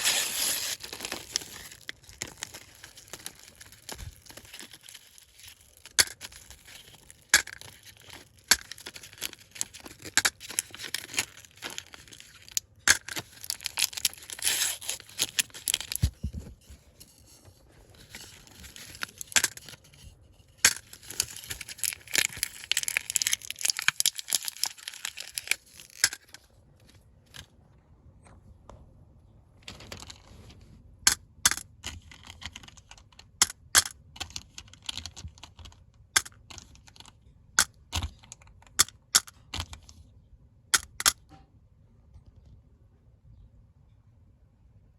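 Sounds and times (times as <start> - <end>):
plastic wrappers crinkling: 0.0 - 16.6, 17.2 - 27.4.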